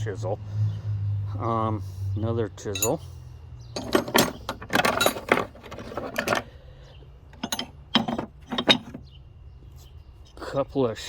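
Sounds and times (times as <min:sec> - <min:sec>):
metal hand tools clinking: 0:02.7 - 0:03.0, 0:03.8 - 0:06.5, 0:07.4 - 0:09.0.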